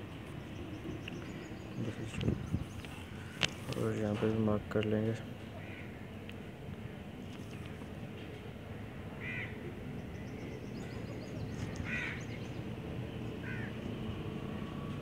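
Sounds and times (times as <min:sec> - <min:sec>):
steady background hum: 0:00.0 - 0:15.0
bird harsh calls: 0:05.5 - 0:06.2, 0:08.8 - 0:12.8, 0:13.4 - 0:13.8.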